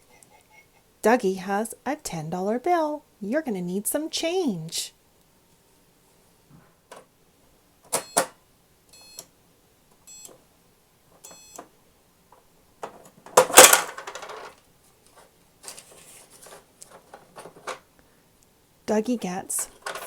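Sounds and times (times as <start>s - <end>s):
soft rustling and clinking: 12.3s - 17.9s
toy cash register clicks: 13.4s - 14.5s, 19.7s - 20.0s
toy coins clattering: 13.6s - 14.5s.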